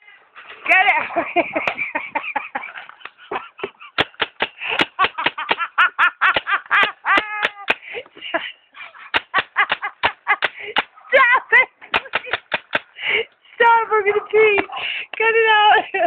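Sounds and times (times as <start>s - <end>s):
woman laughing hard: 0.9s - 13.3s, 15.7s - 16.0s.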